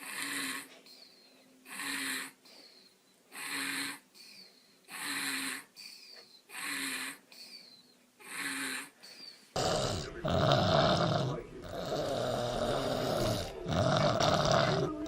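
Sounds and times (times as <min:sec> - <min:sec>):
person snoring: 0:00.0 - 0:00.8, 0:01.6 - 0:02.4, 0:03.3 - 0:04.0, 0:04.9 - 0:05.7, 0:09.6 - 0:15.0.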